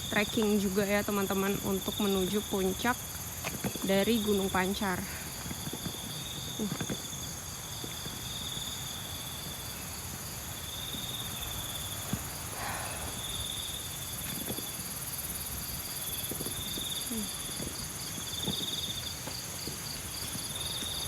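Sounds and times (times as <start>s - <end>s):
crickets and insects trilling: 0.0s - 21.0s
wind rumble on microphone: 9.4s - 21.0s.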